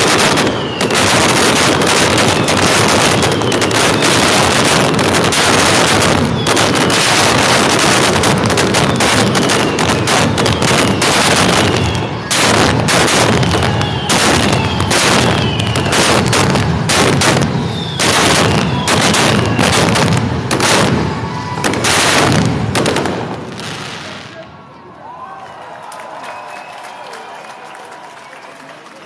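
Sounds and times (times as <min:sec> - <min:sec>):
falling firework whistles: 0:00.0 - 0:23.0
fireworks bangs and crackling: 0:00.0 - 0:24.6.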